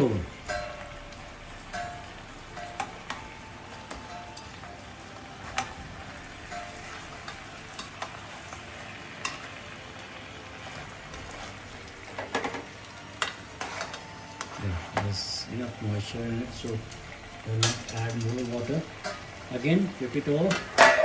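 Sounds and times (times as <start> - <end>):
chicken sizzling in a pan: 0.0 - 21.0
utensil clicking against pan: 9.2 - 9.5, 16.6 - 19.4.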